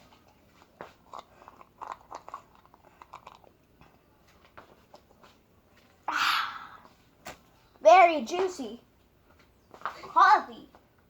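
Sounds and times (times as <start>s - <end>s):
chewing and biting food: 0.0s - 4.0s
wet mouth sounds: 1.0s - 3.6s.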